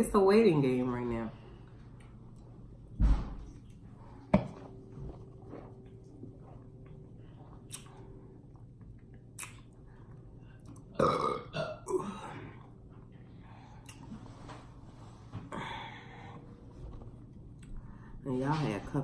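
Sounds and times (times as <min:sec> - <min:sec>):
woman burping: 0:10.9 - 0:12.5.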